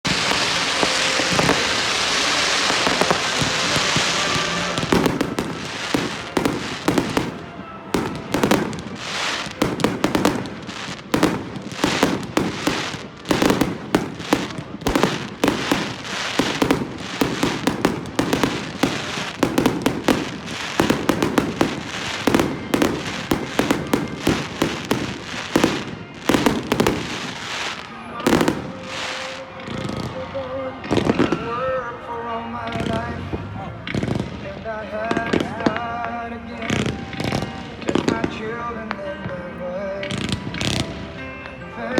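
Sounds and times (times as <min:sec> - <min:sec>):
firework hissing: 0:00.0 - 0:29.5
firework bangs and crackles: 0:00.0 - 0:41.9.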